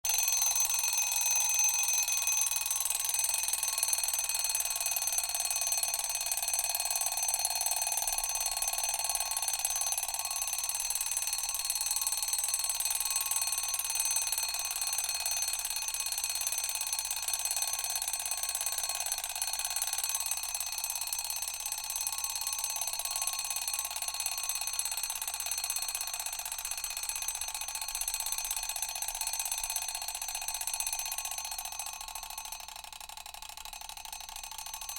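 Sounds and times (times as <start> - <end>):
alarm clock bell ringing: 0.1 - 17.7.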